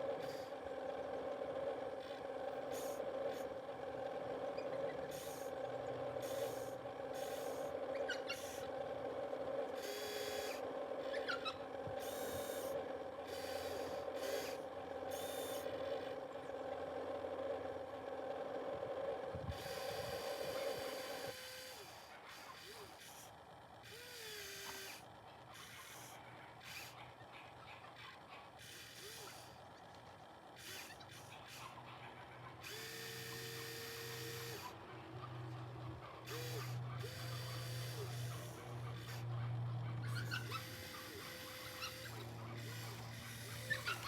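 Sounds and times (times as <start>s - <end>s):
model excavator motors whining: 0.0s - 44.0s
squeaks and buzzes of moving parts: 4.4s - 5.5s, 6.2s - 8.7s, 9.8s - 16.1s, 19.5s - 44.0s.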